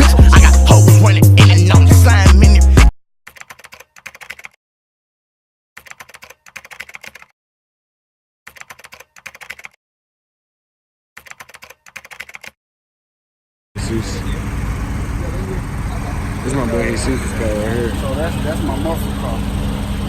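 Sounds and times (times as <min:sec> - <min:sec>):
keyboard typing: 0:03.3 - 0:04.6, 0:05.8 - 0:07.3, 0:08.5 - 0:09.8, 0:11.2 - 0:12.6.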